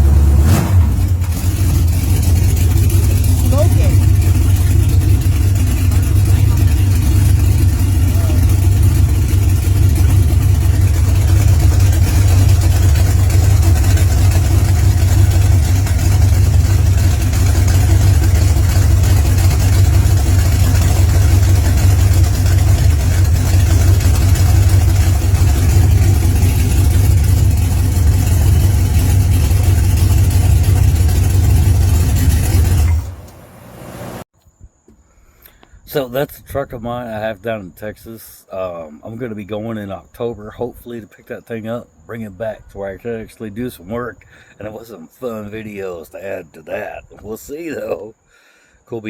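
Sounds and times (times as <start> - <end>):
truck engine rumbling: 0.0 - 34.3.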